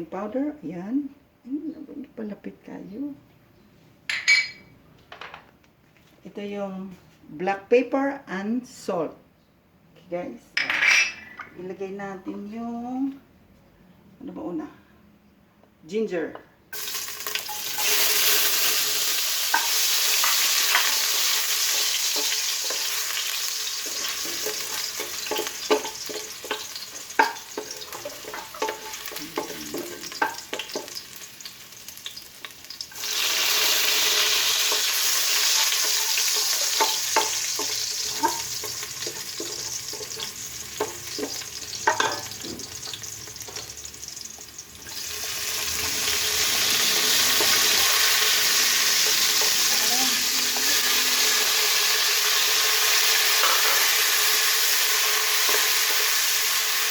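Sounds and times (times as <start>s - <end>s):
hot oil sizzling: 16.7s - 56.9s
spatula scraping a pan: 17.5s - 30.9s.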